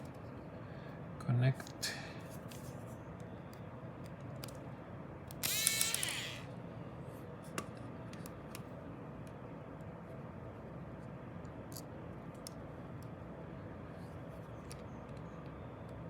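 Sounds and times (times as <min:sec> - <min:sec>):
screwdriver driving screw: 0:05.3 - 0:06.5.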